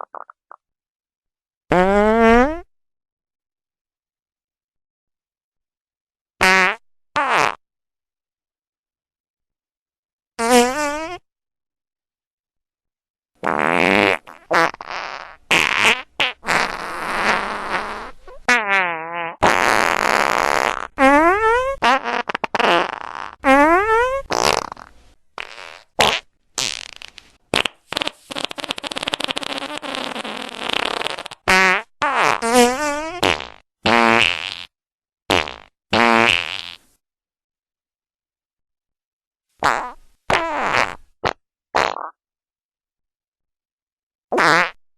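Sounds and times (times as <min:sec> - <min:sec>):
fart sound effects: 0:00.0 - 0:00.6, 0:01.7 - 0:02.7, 0:06.4 - 0:07.6, 0:10.4 - 0:11.3, 0:13.4 - 0:34.7, 0:35.3 - 0:36.8, 0:39.6 - 0:42.2, 0:44.3 - 0:44.8.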